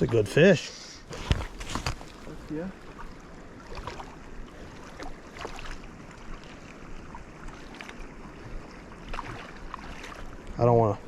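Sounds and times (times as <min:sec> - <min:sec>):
rushing stream water: 0:00.0 - 0:11.0.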